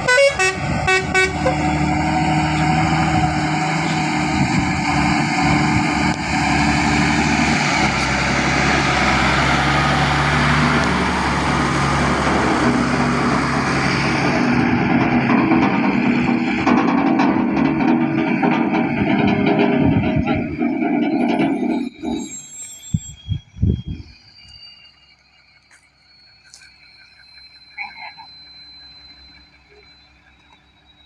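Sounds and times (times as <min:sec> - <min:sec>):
pulsed horn tones: 0:00.0 - 0:04.6
vehicle engine running: 0:00.0 - 0:22.3.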